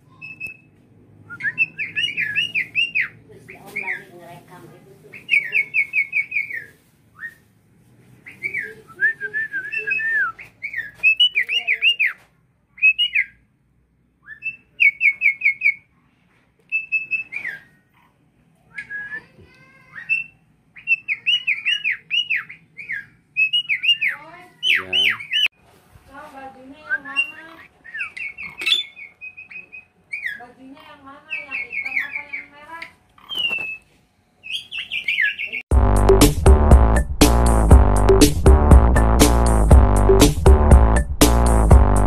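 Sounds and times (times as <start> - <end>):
starling whistling song: 0.1 - 0.7, 1.3 - 4.1, 5.2 - 7.5, 8.2 - 12.2, 12.8 - 13.4, 14.2 - 15.8, 16.7 - 17.8, 18.7 - 25.5, 26.8 - 30.5, 33.2 - 35.6.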